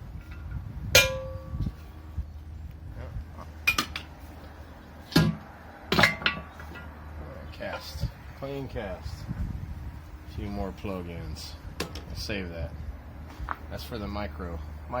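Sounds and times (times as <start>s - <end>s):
sharp ringing metal clang: 1.0s - 1.7s.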